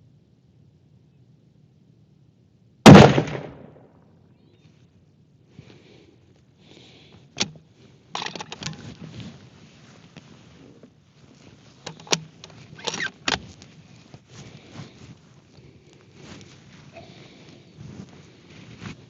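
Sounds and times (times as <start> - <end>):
rifle bolt clicks and rattles: 7.4 - 9.0, 11.8 - 13.6.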